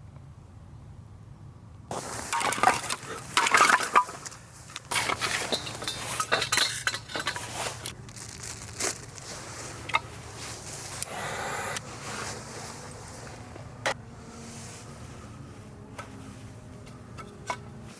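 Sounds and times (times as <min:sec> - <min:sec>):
hard objects clinking: 0:02.2 - 0:09.3.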